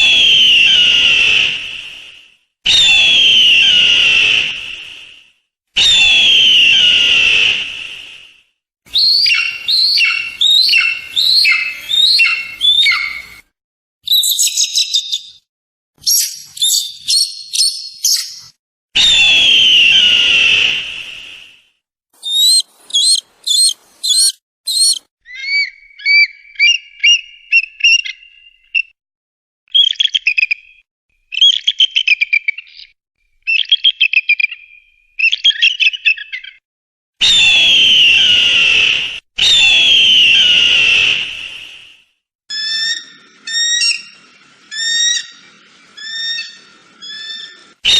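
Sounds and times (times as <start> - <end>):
eagles calling: 8.9 - 13.4, 22.2 - 28.1, 42.5 - 47.9.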